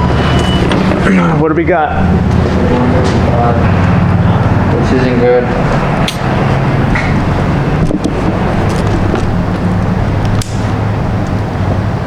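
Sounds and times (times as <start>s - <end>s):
machine running drone: 0.0s - 12.0s
sharp clicks: 9.8s - 11.5s.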